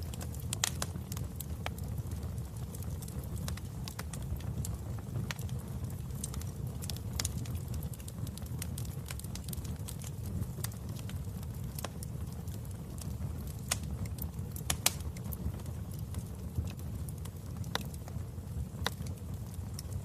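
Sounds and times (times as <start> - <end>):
fireplace fire rumbling: 0.0 - 20.0
logs crackling and popping: 0.0 - 20.0.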